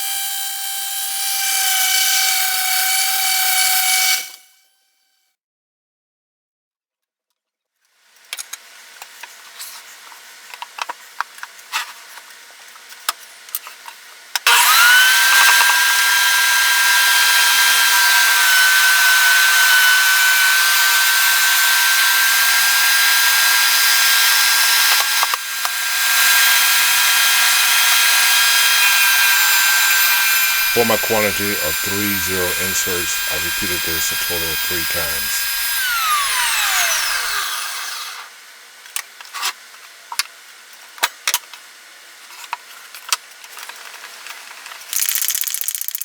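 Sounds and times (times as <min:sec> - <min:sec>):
power tool motor whine: 0:14.5 - 0:38.3.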